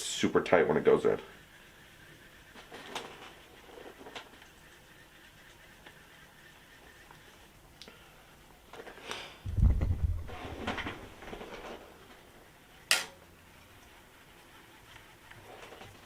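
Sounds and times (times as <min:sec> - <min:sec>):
low thump: 0:09.5 - 0:11.1.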